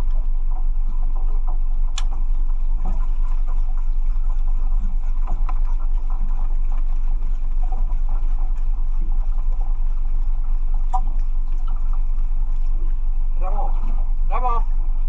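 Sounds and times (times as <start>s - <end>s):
boat engine droning: 0.0s - 15.0s
faint clicks: 1.9s - 2.2s.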